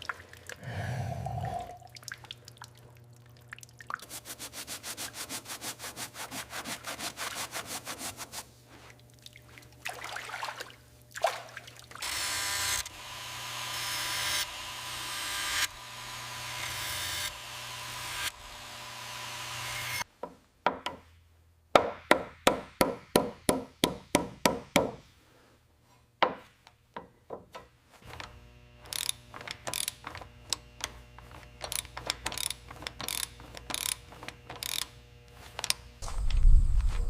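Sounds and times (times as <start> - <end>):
low steady hum: 36.0 - 37.0.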